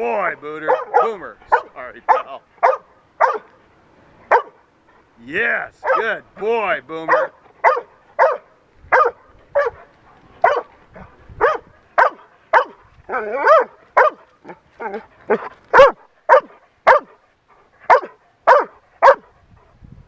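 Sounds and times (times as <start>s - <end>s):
dog barking: 0.6s - 3.6s, 4.3s - 4.6s, 5.8s - 6.2s, 7.1s - 17.2s, 17.8s - 19.4s.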